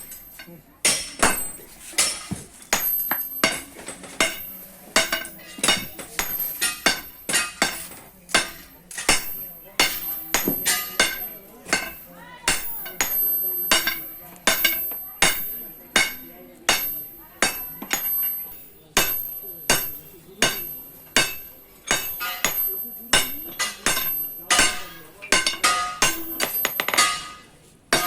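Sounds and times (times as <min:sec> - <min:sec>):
hammer striking metal on anvil: 0:00.0 - 0:28.0.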